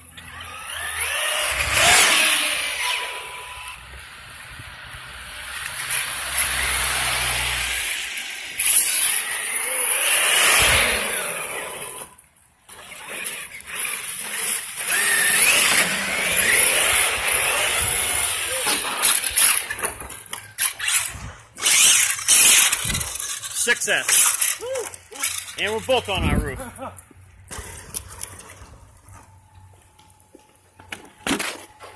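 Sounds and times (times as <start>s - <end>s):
electric motor whine: 0.0s - 4.0s, 14.2s - 19.7s.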